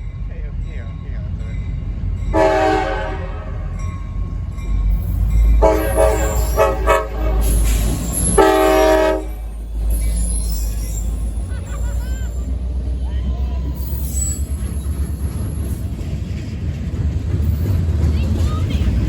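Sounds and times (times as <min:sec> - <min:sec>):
train rumble: 0:00.0 - 0:19.0
locomotive air horn blasts: 0:02.3 - 0:03.8, 0:05.6 - 0:09.7.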